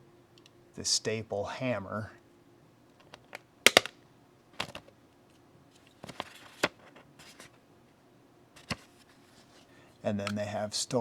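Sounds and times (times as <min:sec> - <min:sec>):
stapler clicking: 0:03.7 - 0:03.9.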